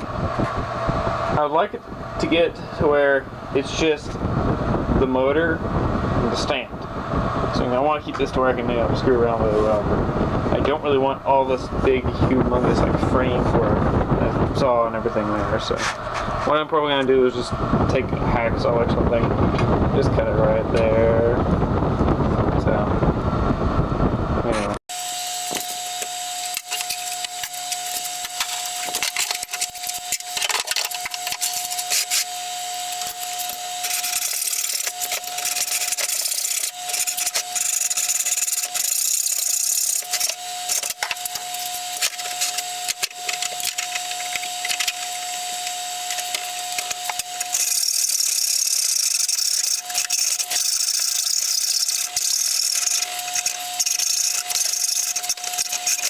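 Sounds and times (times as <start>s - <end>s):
hacksaw cutting metal: 25.4s - 56.0s.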